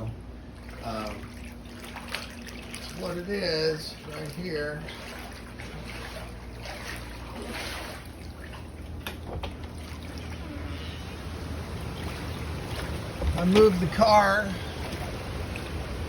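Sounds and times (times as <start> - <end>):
floodwater sloshing and trickling: 0.0 - 16.0.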